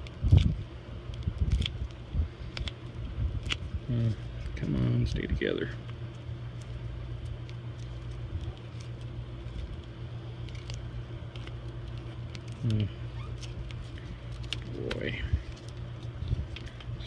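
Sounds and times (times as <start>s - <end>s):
steady low hum: 0.0s - 17.0s
person murmuring: 12.6s - 13.0s.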